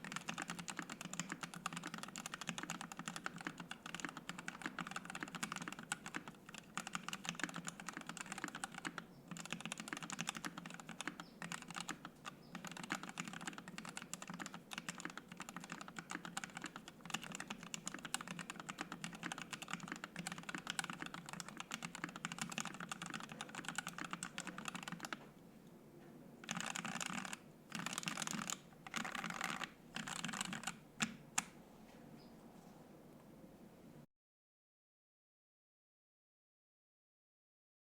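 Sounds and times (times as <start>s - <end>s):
fast mechanical keyboard typing: 0.0s - 25.2s, 26.4s - 31.5s.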